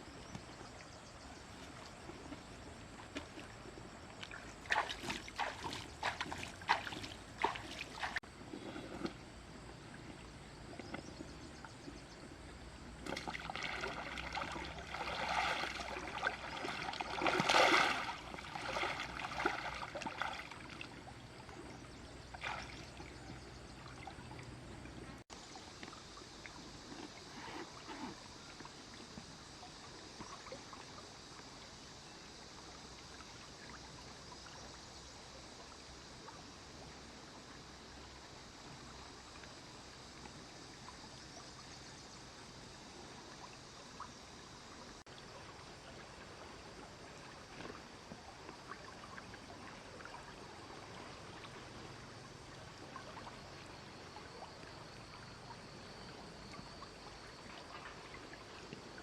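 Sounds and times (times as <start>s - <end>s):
steady hiss of flowing water: 0.0s - 59.0s
water splashing and pouring: 4.3s - 9.1s, 13.0s - 20.9s.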